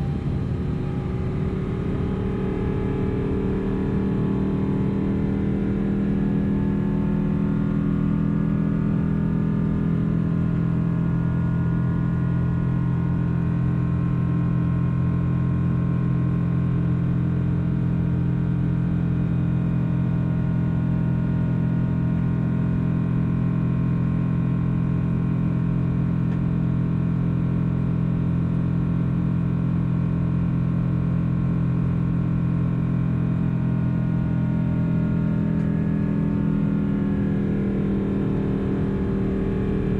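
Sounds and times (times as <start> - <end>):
faint engine whine: 0.0 - 39.9
jet engine drone in cabin: 0.0 - 39.9.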